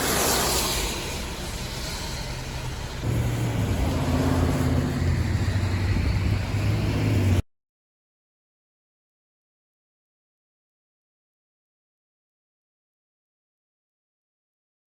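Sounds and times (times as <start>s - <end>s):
heavy vehicle engine hum: 0.0s - 7.4s
vehicle swishing past: 0.0s - 7.4s.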